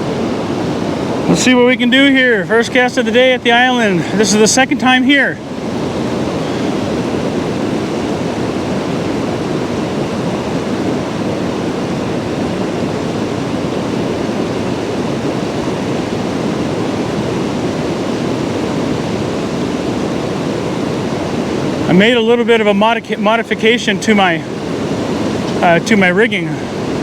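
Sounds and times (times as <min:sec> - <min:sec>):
river water rushing: 0:00.0 - 0:27.0.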